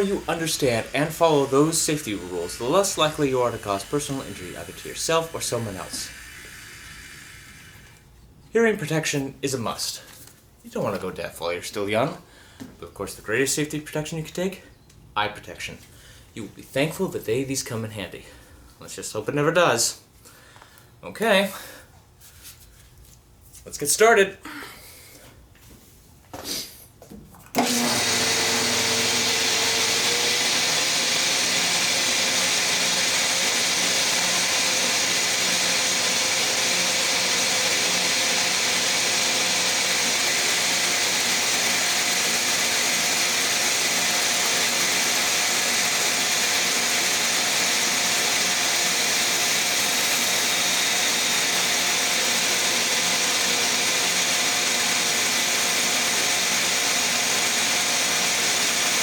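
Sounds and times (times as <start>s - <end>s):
bandsaw whirring: 0.0s - 8.1s, 27.6s - 59.0s.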